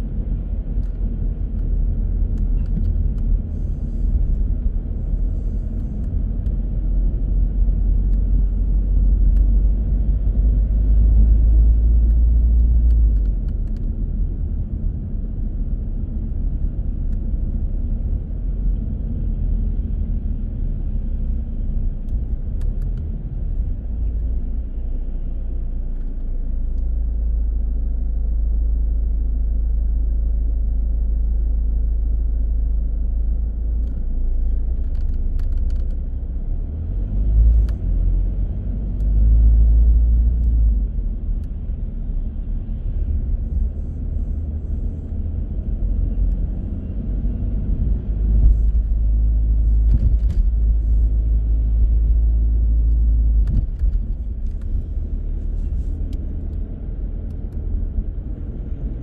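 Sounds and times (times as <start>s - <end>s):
car engine and road noise: 0.0s - 59.0s
faint clicks: 34.8s - 36.1s.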